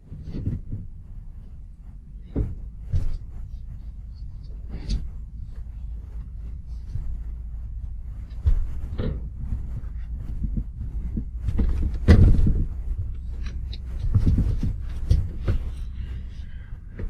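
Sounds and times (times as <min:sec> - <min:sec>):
fridge knocking and scraping on wood: 0:02.1 - 0:03.3, 0:07.8 - 0:16.2.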